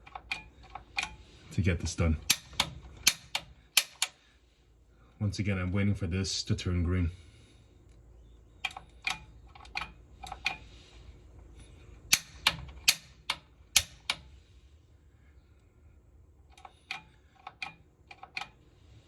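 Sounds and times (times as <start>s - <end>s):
piezo igniter clicking: 0.0s - 1.2s, 2.2s - 4.2s, 7.9s - 10.7s, 12.0s - 14.4s, 16.5s - 18.6s.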